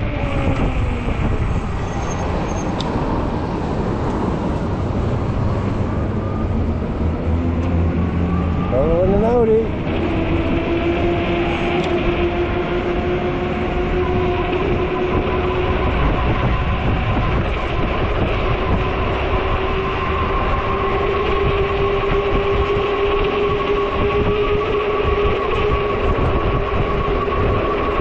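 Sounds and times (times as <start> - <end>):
wind rumbling on microphone: 0.0 - 28.0
electric motor whining: 6.2 - 28.0.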